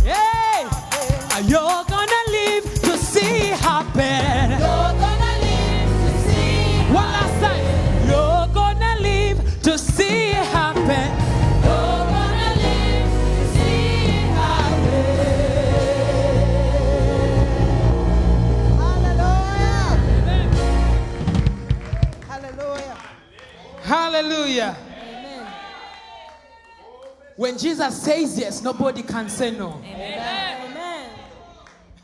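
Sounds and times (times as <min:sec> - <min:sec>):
gospel choir and lead singers: 0:00.0 - 0:21.7
deep bass line: 0:04.2 - 0:10.0, 0:10.6 - 0:22.1.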